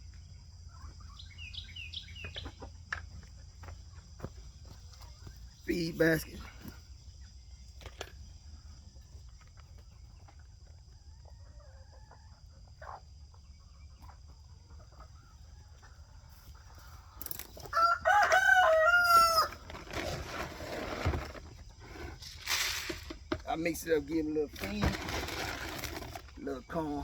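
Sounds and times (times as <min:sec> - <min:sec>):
rooster crowing: 0:17.7 - 0:19.6.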